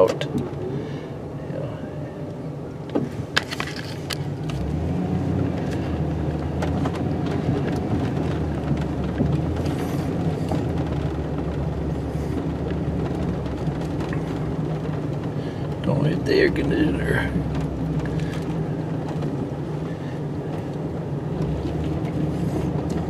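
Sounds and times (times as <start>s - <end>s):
truck engine running under load: 2.1s - 23.0s
plow blade dragging snow: 3.0s - 23.0s.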